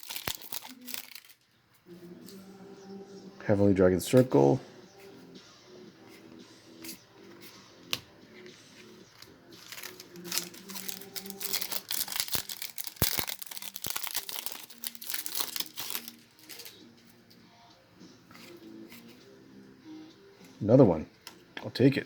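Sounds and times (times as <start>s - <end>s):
foil pack crinkling and tearing: 0.0s - 1.4s, 9.6s - 16.8s.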